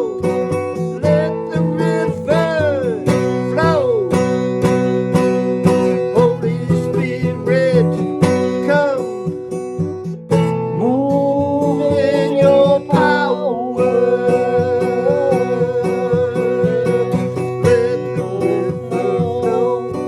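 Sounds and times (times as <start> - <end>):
sliding guitar melody: 0.0 - 20.0
strummed acoustic guitar: 0.0 - 20.0.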